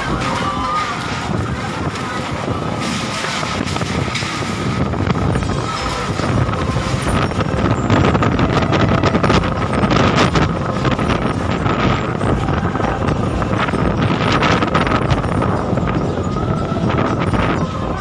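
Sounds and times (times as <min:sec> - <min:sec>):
storm wind buffeting microphone: 0:00.0 - 0:18.0.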